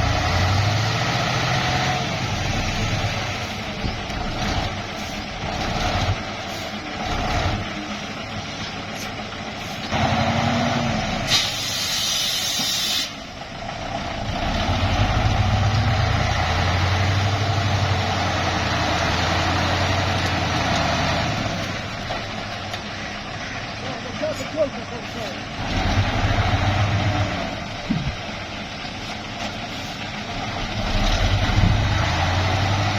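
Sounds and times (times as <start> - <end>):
truck diesel engine running: 0.0 - 32.9
air brake hiss: 11.3 - 13.2.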